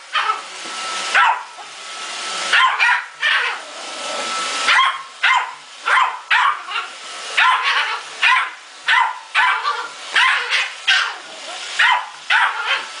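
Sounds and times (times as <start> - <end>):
small dog barking: 1.1 - 1.6, 2.5 - 3.6, 4.6 - 12.9.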